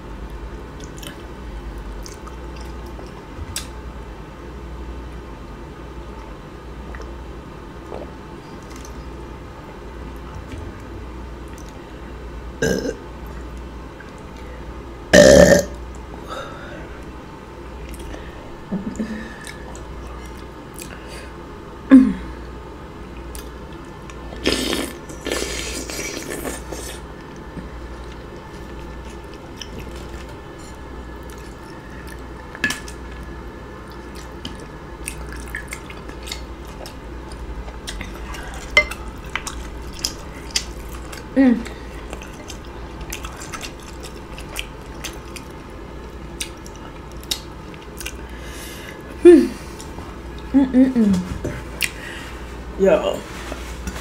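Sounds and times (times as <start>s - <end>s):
woman burping: 12.6s - 13.0s, 15.1s - 15.8s.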